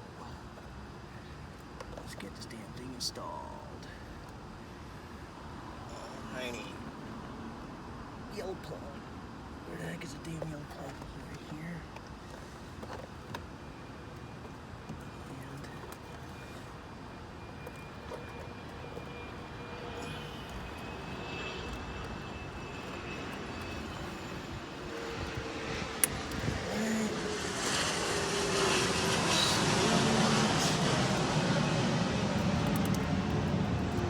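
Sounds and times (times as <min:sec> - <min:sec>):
distant engine: 0:09.7 - 0:34.0.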